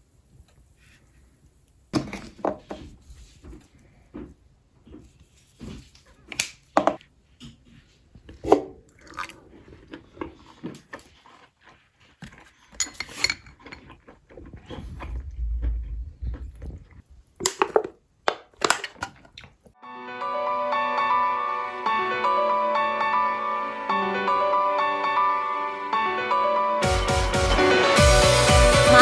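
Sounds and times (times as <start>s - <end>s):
crunchy chewing: 3.0s - 19.8s
tableware clinking: 12.7s - 13.8s
music: 19.8s - 29.0s.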